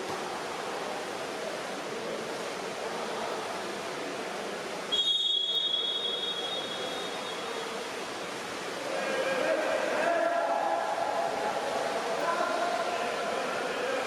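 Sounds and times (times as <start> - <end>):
pool hall background noise: 0.0 - 14.0
referee's whistle blast: 4.9 - 7.4.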